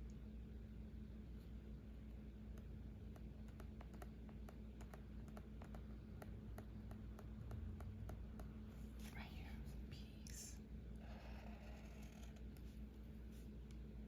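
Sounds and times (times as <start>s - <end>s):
faint steady hum: 0.0s - 14.0s
light irregular taps and clicks: 2.0s - 8.6s.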